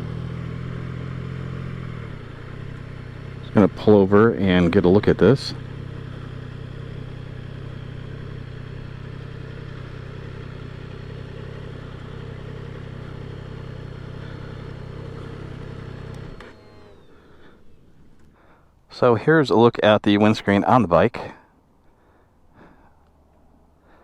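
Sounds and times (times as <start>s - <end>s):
motorcycle engine idling: 0.0s - 24.0s
faint high whine: 14.2s - 21.0s.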